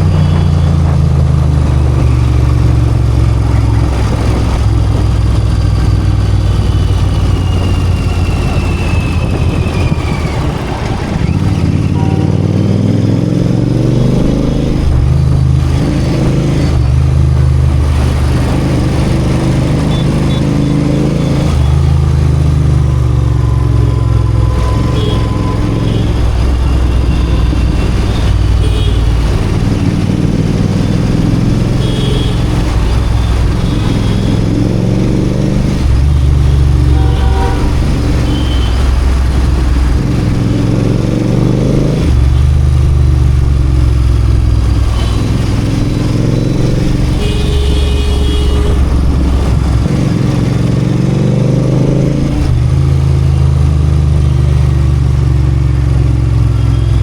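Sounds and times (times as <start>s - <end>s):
motorcycle engine accelerating: 0.0s - 57.0s
vehicle horn toots: 11.8s - 12.6s, 24.0s - 29.1s, 31.8s - 34.4s, 36.7s - 38.8s, 47.1s - 49.1s.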